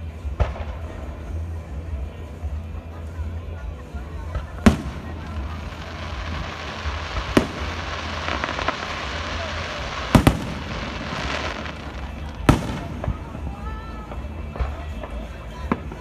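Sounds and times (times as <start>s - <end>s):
fireworks crackling: 0.0s - 16.0s
fireworks banging: 4.0s - 16.0s.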